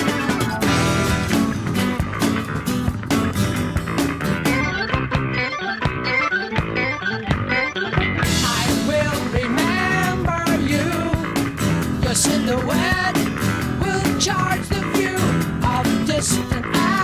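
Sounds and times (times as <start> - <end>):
rock music with singing: 0.0 - 17.0.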